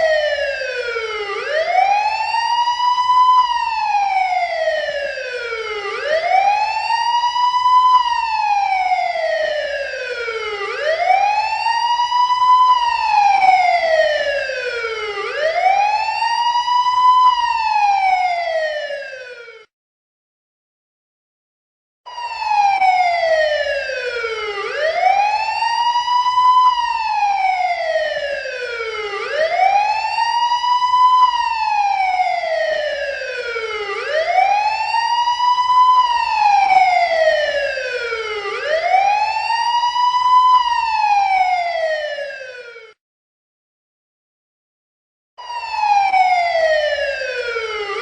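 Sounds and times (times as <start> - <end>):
siren wailing: 0.0 - 19.7, 22.1 - 43.0, 45.4 - 48.0.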